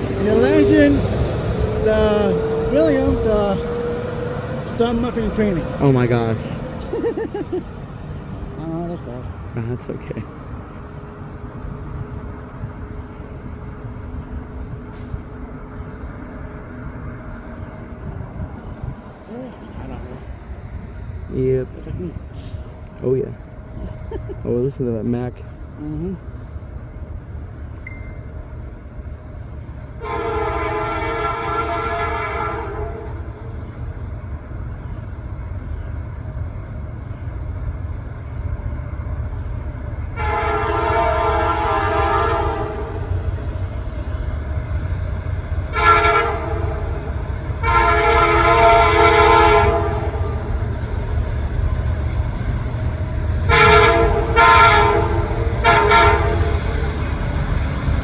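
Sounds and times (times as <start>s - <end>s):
diesel engine rumble: 0.0s - 58.0s
locomotive air horn: 30.0s - 33.6s, 40.2s - 43.4s, 45.7s - 50.7s, 53.4s - 57.2s.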